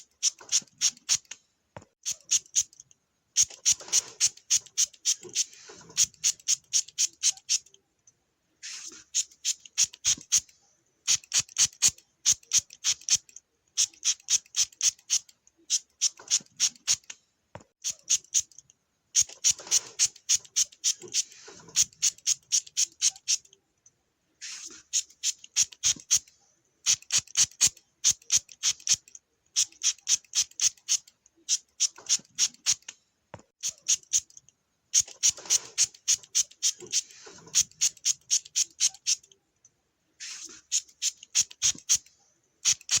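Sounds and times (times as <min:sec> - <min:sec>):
spray bottle hissing spurts: 0:00.0 - 0:01.4, 0:03.4 - 0:07.7, 0:08.6 - 0:10.5, 0:11.1 - 0:17.2, 0:19.2 - 0:23.4, 0:24.4 - 0:32.9, 0:34.9 - 0:39.2, 0:40.2 - 0:43.0.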